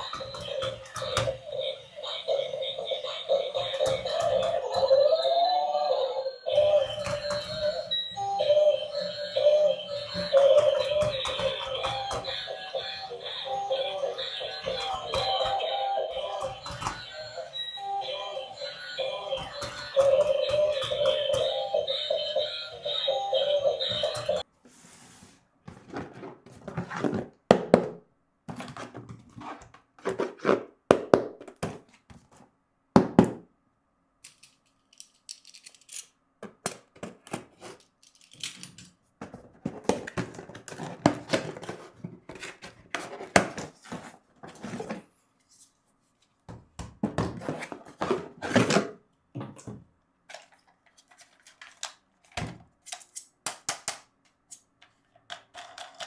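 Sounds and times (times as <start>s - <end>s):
plastic parts knocking and clicking: 0.0s - 1.5s, 10.0s - 12.5s, 14.6s - 17.1s, 19.3s - 21.8s, 34.2s - 45.0s, 46.5s - 56.0s.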